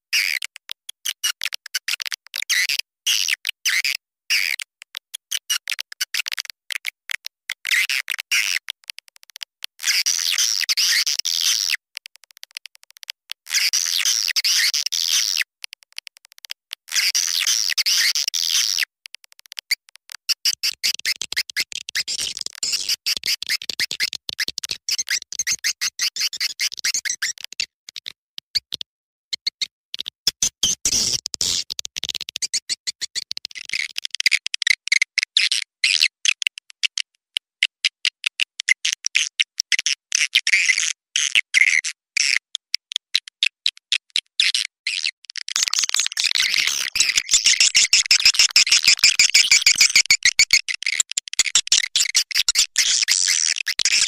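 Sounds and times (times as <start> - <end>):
swiftlets twittering and clicking: 44.9 - 54.0.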